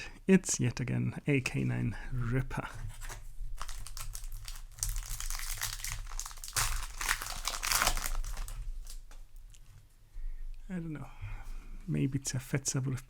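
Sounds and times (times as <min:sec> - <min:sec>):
plastic wrapper crinkling: 0:02.9 - 0:09.6.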